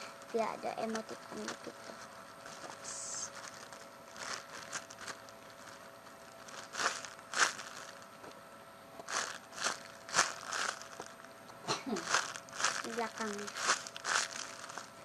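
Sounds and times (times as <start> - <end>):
squishy toy crinkling: 0.0 - 8.4, 9.0 - 11.3, 12.0 - 15.0.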